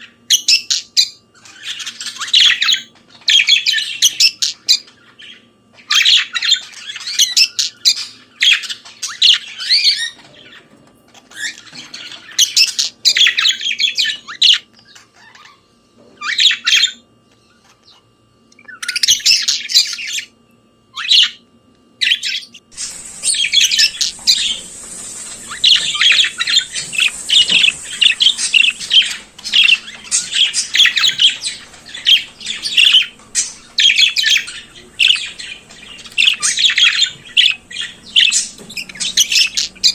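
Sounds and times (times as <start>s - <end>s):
budgerigar warbling and chattering: 22.0s - 39.9s.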